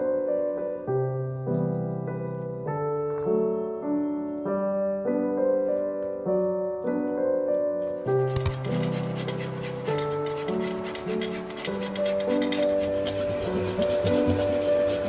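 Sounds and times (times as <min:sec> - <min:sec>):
soft piano music: 0:00.0 - 0:15.0.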